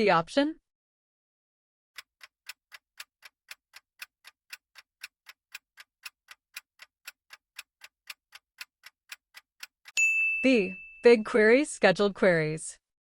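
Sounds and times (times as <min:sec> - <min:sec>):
clock ticking: 0:02.0 - 0:10.0.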